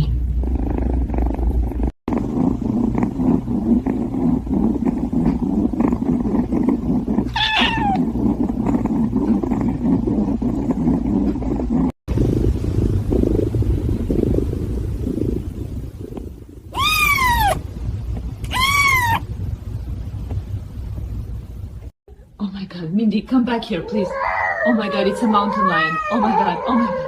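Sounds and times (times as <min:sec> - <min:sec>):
cat purring: 0:00.1 - 0:12.0, 0:12.7 - 0:21.9
cat meowing: 0:07.3 - 0:08.0, 0:16.8 - 0:17.6, 0:18.5 - 0:19.2, 0:24.1 - 0:27.0.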